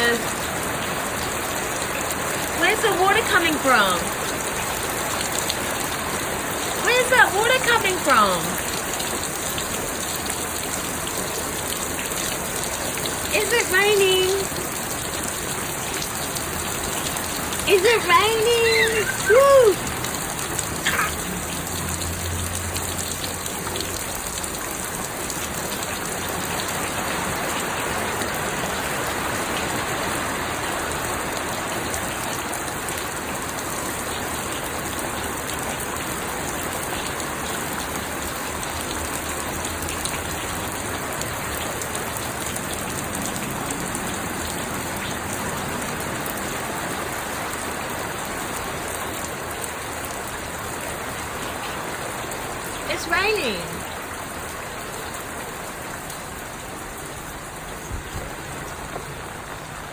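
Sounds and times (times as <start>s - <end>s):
steady rain pattering: 0.0s - 59.9s.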